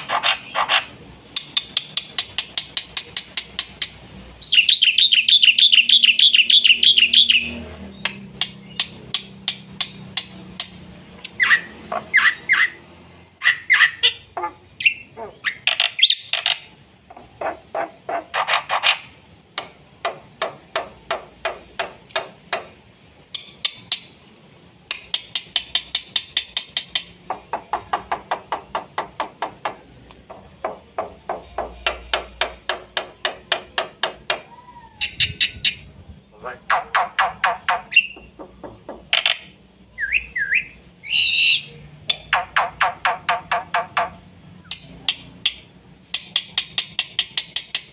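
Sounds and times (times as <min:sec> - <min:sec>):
bird singing: 0:00.0 - 0:21.2, 0:33.2 - 0:47.9.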